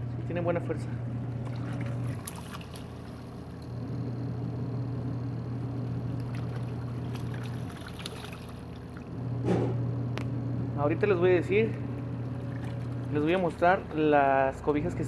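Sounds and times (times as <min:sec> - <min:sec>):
washing machine motor hum: 0:00.0 - 0:15.0
water churning: 0:01.3 - 0:03.6, 0:05.8 - 0:09.2, 0:11.2 - 0:14.9.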